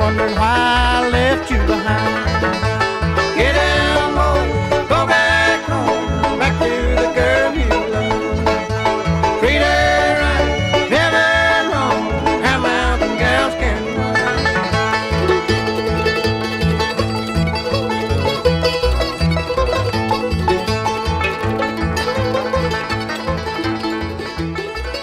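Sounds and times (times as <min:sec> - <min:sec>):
bluegrass country song: 0:00.0 - 0:25.0.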